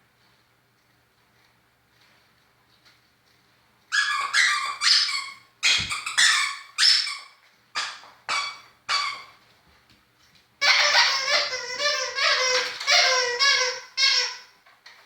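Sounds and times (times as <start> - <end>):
small dog yipping: 3.9 - 9.4.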